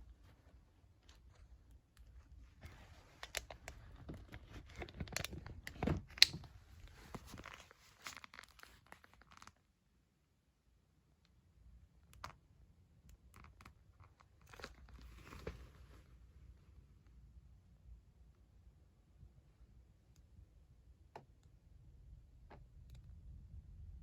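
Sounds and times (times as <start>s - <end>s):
packaging rustling and clicking: 2.6s - 9.6s.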